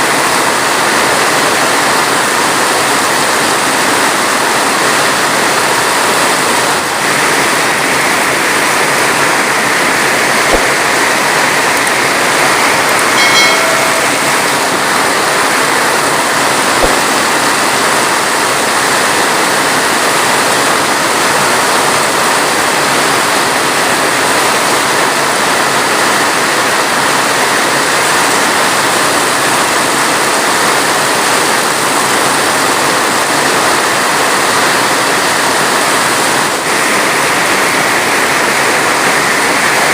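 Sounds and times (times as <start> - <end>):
heavy rain falling: 0.0 - 39.9
faint pitched sound: 12.6 - 15.5.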